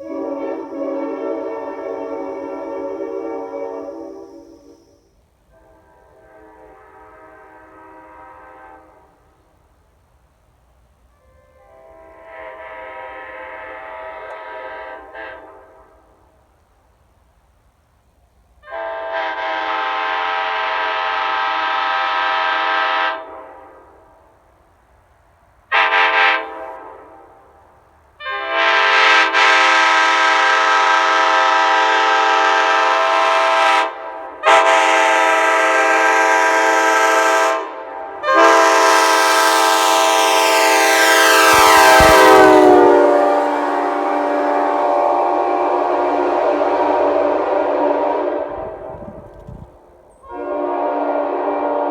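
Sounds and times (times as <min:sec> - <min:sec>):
air horn blasts: 0:00.0 - 0:04.9, 0:05.5 - 0:09.3, 0:11.4 - 0:16.1, 0:18.6 - 0:24.0, 0:25.7 - 0:27.4, 0:28.2 - 0:49.7, 0:50.3 - 0:51.9.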